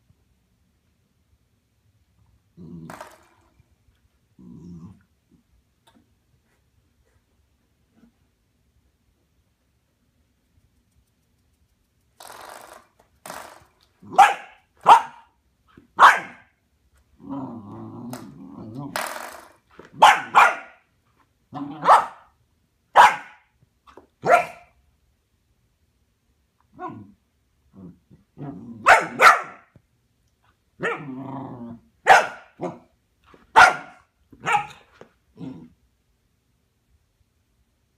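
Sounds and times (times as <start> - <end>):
puppy growling: 2.5 - 3.4, 4.3 - 5.4, 17.2 - 19.6, 21.5 - 22.0, 26.8 - 29.2, 30.8 - 31.9, 35.3 - 35.8
puppy barking: 14.1 - 15.3, 16.0 - 16.5, 20.0 - 20.9, 21.6 - 22.3, 22.9 - 23.5, 24.2 - 24.8, 28.8 - 29.7, 30.8 - 31.1, 32.0 - 32.9, 33.5 - 34.9.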